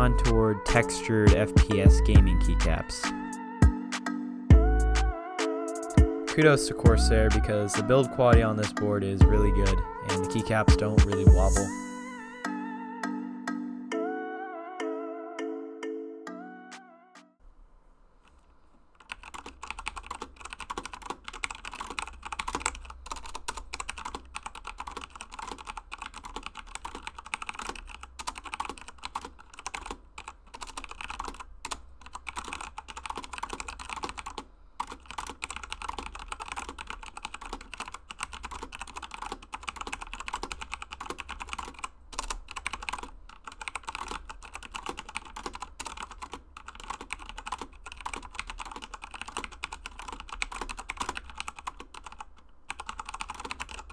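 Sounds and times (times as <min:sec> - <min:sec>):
fast typing on mechanical keyboard: 0:09.6 - 0:11.5, 0:19.0 - 0:53.9.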